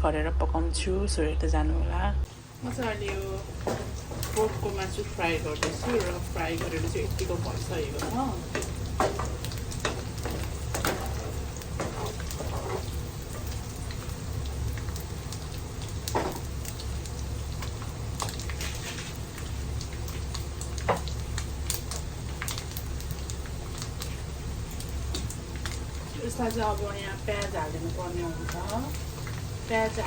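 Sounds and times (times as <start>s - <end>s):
meat sizzling in hot oil: 2.3s - 30.0s.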